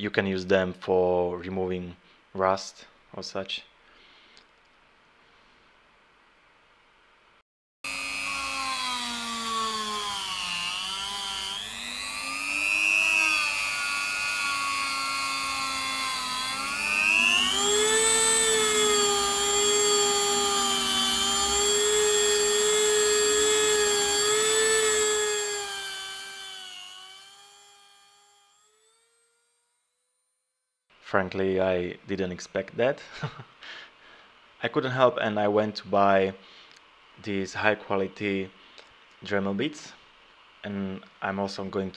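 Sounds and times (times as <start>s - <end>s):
rotary tool motor whining: 7.9s - 30.4s.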